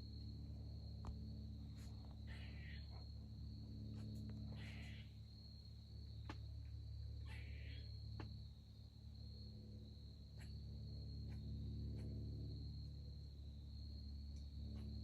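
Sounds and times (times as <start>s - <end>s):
faint low hum: 0.0s - 15.0s
insects high-pitched drone: 0.0s - 15.0s.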